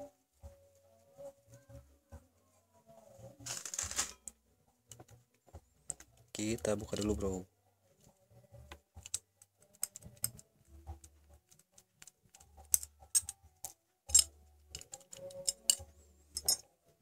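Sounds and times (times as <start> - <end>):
metal clicks and clinks: 5.9 - 7.3, 9.0 - 10.5, 11.5 - 16.7.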